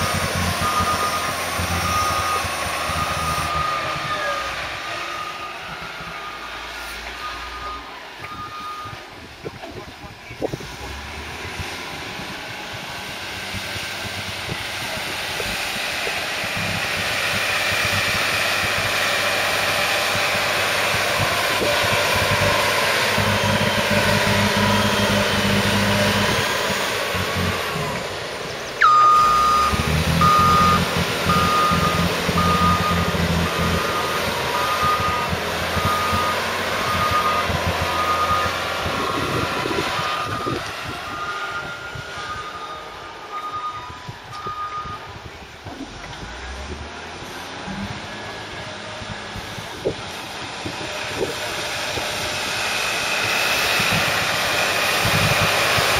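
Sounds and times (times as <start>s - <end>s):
heavy diesel engines running: 0.0s - 55.9s
reversing alarm beeping: 0.4s - 9.0s, 28.8s - 45.1s.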